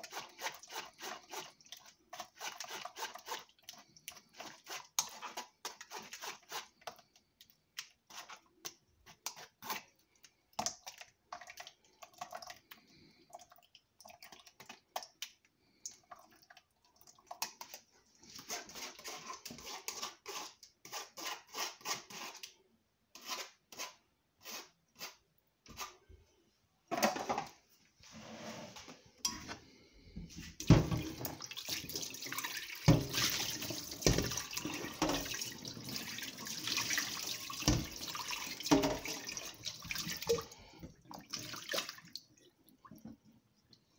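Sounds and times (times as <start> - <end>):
liquid running or pouring: 30.6 - 43.9.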